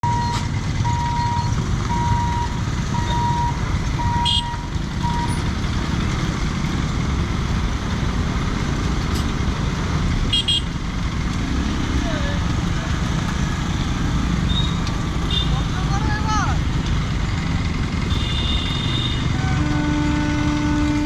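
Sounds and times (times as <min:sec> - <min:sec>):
electronic warning beeps: 0:00.0 - 0:05.4
low rumble of vehicle engines: 0:00.0 - 0:21.0.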